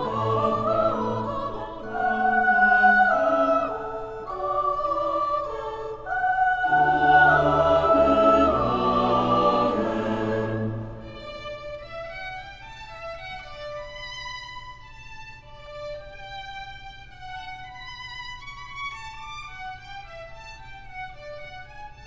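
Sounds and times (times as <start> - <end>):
choir singing held chords: 0.0 - 11.7.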